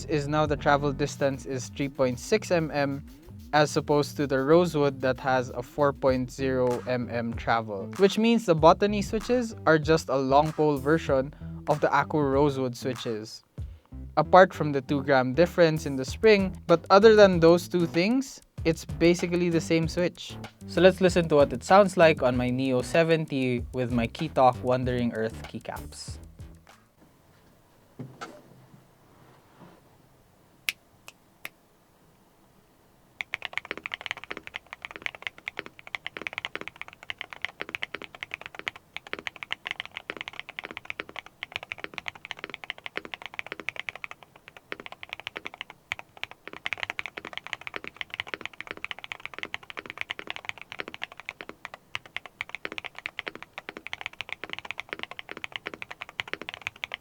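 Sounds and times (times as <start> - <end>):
mechanical keyboard typing: 21.2 - 25.8, 33.2 - 57.0.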